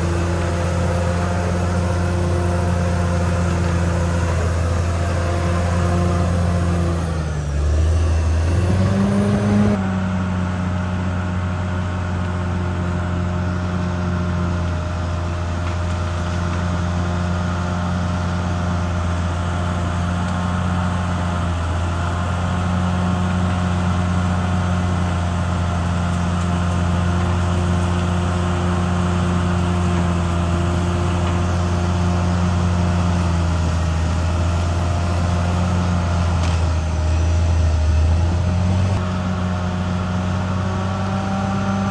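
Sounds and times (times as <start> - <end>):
bulldozer diesel engine running: 0.0 - 41.9.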